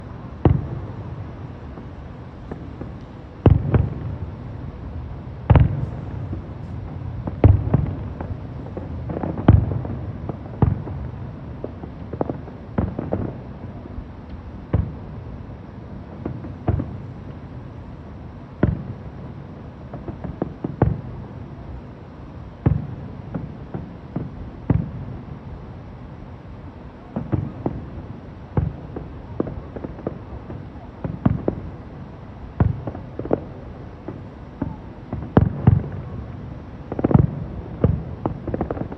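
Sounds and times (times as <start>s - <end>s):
fireworks banging: 0.0s - 13.6s, 27.1s - 38.9s.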